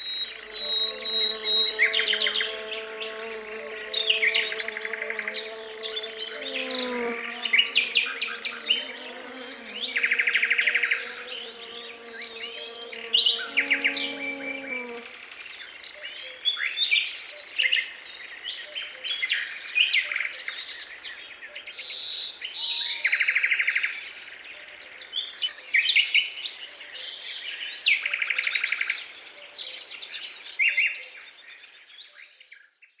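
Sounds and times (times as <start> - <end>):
songbirds chirping and trilling: 0.2 - 15.0.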